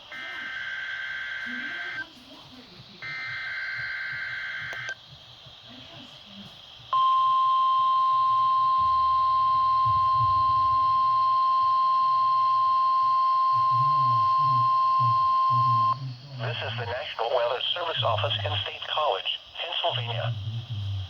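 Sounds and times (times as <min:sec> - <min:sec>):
two-tone data warble: 0:00.0 - 0:02.1, 0:03.0 - 0:05.0, 0:07.0 - 0:19.0
steady alarm beep: 0:03.0 - 0:05.0, 0:06.9 - 0:16.0.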